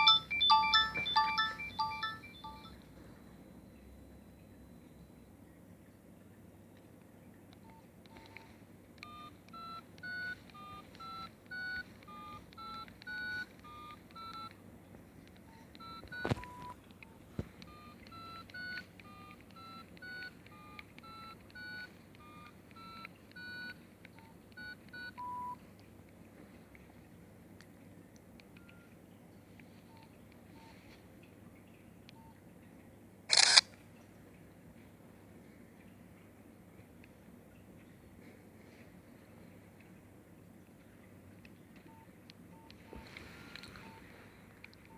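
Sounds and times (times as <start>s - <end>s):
mobile phone ringtone beeps: 0.0s - 2.8s, 9.0s - 14.5s, 15.8s - 16.8s, 17.7s - 23.7s.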